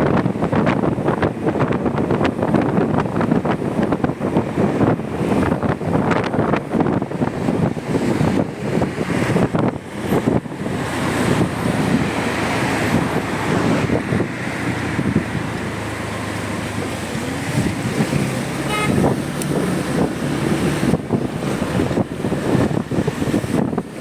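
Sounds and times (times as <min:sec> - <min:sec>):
wind buffeting microphone: 0:00.0 - 0:24.0
horn toot: 0:18.6 - 0:19.2.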